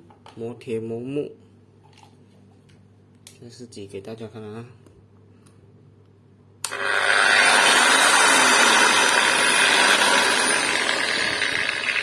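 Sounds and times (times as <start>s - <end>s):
angle grinder running: 6.6s - 12.0s.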